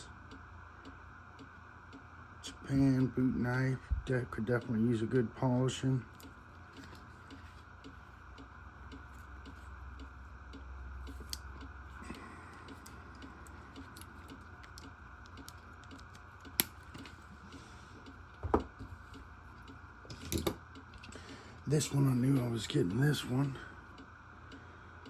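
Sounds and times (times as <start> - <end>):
faint steady hum: 0.0 - 25.0
pocketknife clicks and taps: 11.1 - 11.5.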